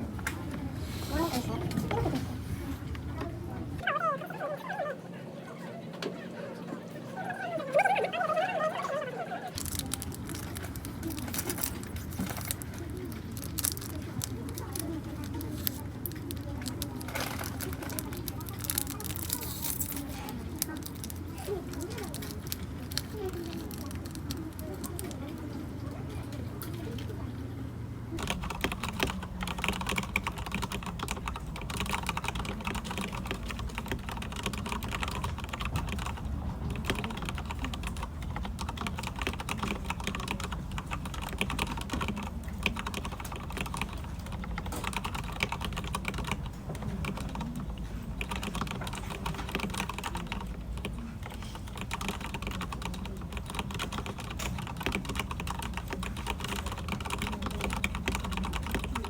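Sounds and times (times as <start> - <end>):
mechanical keyboard typing: 9.5 - 25.5, 28.2 - 59.0.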